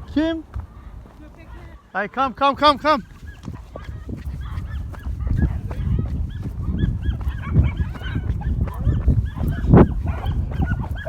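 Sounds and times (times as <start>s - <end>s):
dog yelping: 3.0s - 11.0s.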